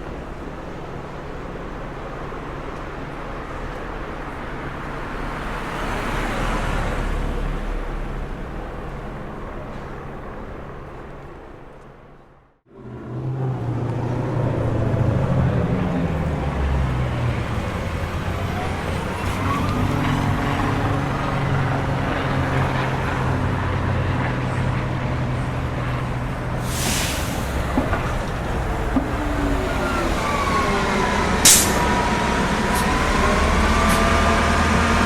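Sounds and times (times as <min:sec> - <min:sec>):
road noise: 0:00.0 - 0:35.0
vehicle engines humming: 0:00.0 - 0:35.0.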